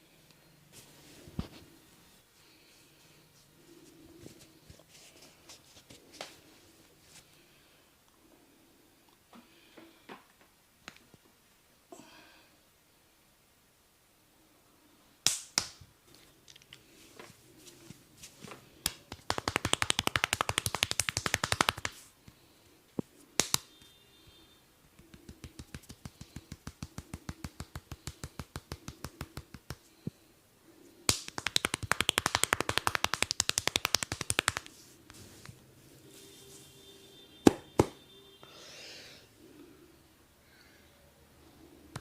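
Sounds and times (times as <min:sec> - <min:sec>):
hands slapping head and body: 0:15.2 - 0:15.8, 0:18.8 - 0:22.0, 0:23.4 - 0:23.9, 0:25.0 - 0:29.9, 0:31.1 - 0:34.8, 0:37.5 - 0:38.0.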